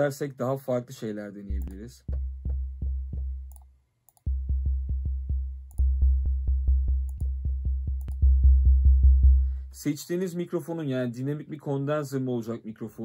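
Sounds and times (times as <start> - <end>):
synth bass short repeated notes: 1.5 - 3.6, 4.3 - 9.6.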